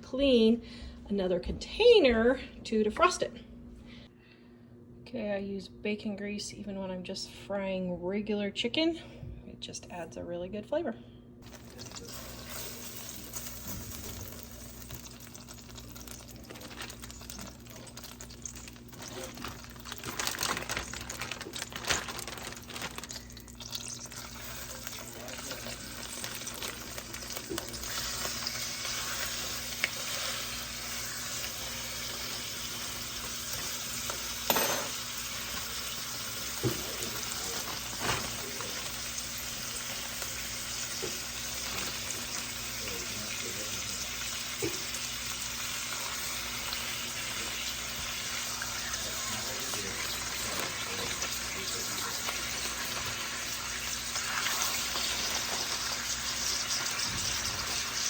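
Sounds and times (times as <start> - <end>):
chicken sizzling in a pan: 11.4 - 20.1, 20.8 - 58.0.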